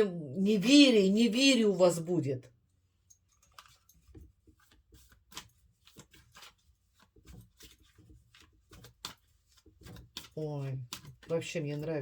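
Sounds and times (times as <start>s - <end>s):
cards being handled on table: 3.1s - 12.0s.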